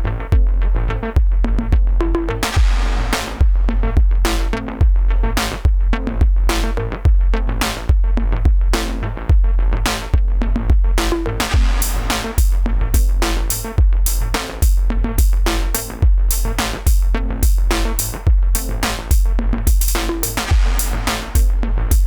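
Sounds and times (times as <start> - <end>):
deep held bass: 0.0 - 22.0
kick drum beat: 0.3 - 0.6, 1.2 - 22.0
snare hits with delay tails: 2.5 - 4.6, 11.4 - 22.0.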